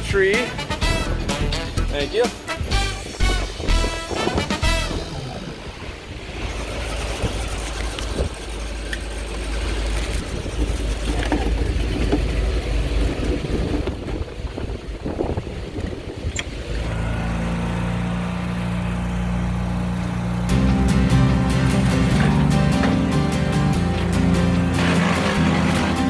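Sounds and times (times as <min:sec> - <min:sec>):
background music: 0:00.0 - 0:05.8, 0:20.4 - 0:26.0
truck engine and road rumble: 0:00.0 - 0:26.0.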